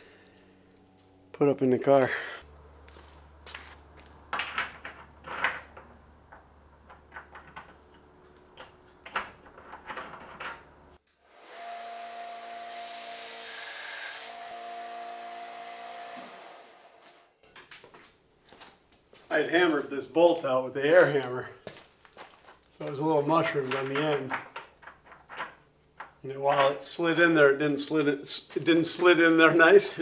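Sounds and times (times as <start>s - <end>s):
power tool running: 11.2s - 17.3s.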